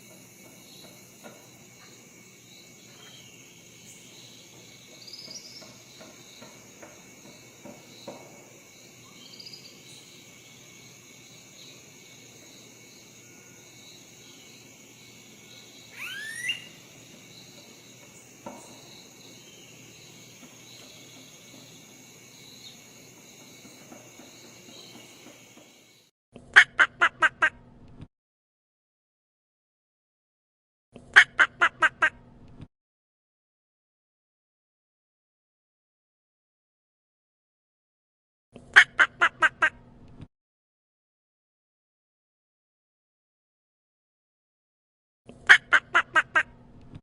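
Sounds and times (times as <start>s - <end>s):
bird chirps: 0.0s - 12.6s, 13.6s - 25.7s
insect chorus: 0.0s - 26.1s
upward sweeping call: 15.9s - 16.8s.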